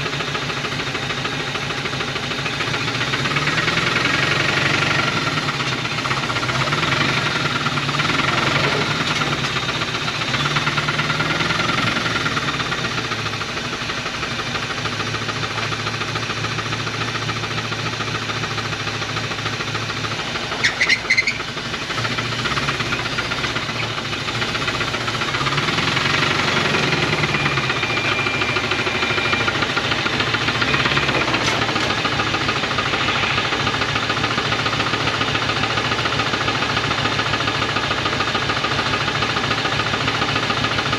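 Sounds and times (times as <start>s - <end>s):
brief high-pitched sound: 30.7s - 34.4s.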